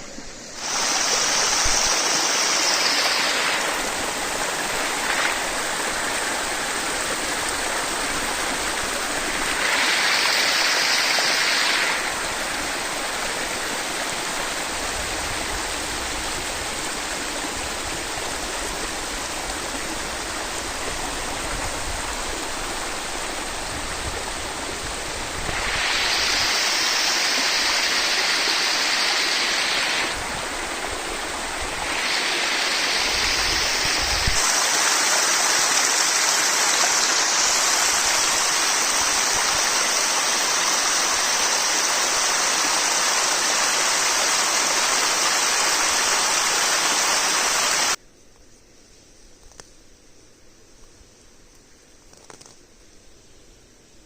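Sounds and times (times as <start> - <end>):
stream water rushing: 0.0 - 48.0.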